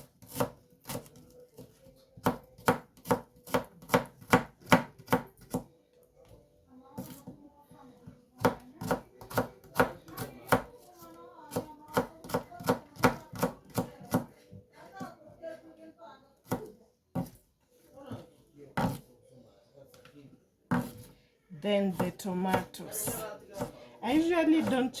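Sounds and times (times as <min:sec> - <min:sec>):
knife chopping onions: 0:00.0 - 0:05.7, 0:08.4 - 0:10.8, 0:11.5 - 0:14.3, 0:16.5 - 0:17.4, 0:18.8 - 0:19.0, 0:20.7 - 0:21.1, 0:21.9 - 0:25.0.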